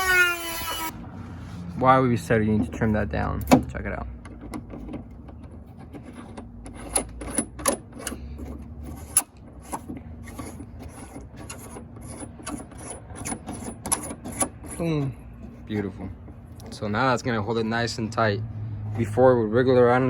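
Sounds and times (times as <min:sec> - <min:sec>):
hand tool scraping clicks: 0:05.4 - 0:15.0.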